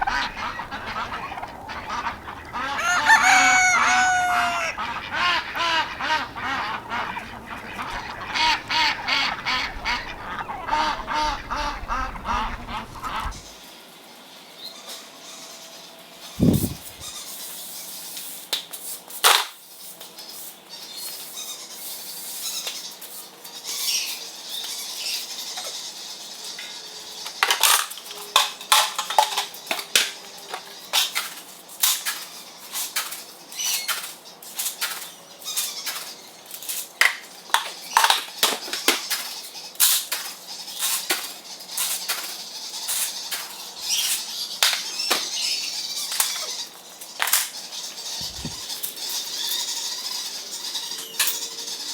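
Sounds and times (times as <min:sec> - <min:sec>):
faint high bird chirps: 0:00.0 - 0:08.4.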